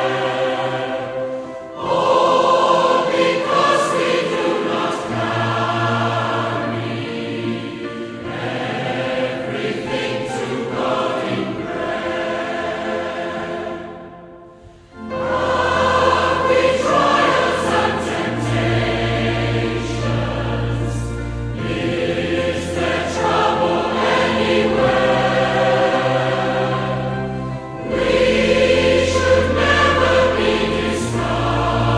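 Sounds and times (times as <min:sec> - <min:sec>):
choir singing a hymn: 0:00.0 - 0:31.9.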